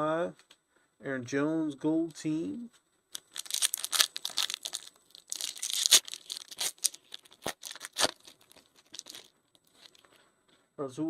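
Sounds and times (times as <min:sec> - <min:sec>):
foil wrapper tearing and crinkling: 0:03.2 - 0:10.1.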